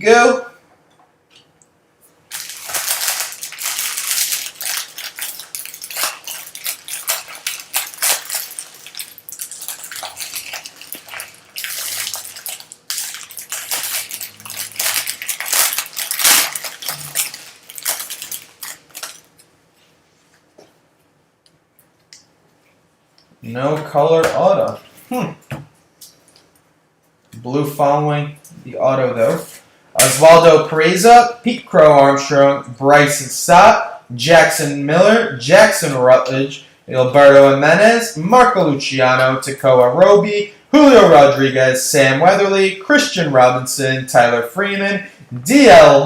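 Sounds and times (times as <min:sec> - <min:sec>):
wrapper crinkling: 0:02.3 - 0:19.5.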